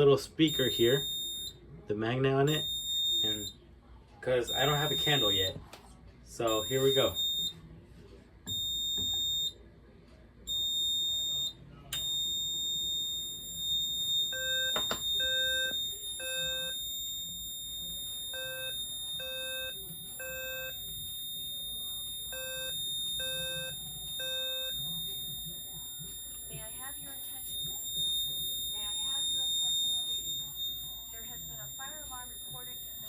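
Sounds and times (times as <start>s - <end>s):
fire alarm horn blasts: 0.3s - 1.6s, 2.4s - 3.6s, 4.4s - 5.6s, 6.4s - 7.6s, 8.5s - 9.6s, 10.5s - 33.0s
high-pitched electronic beeping tone: 11.0s - 33.0s.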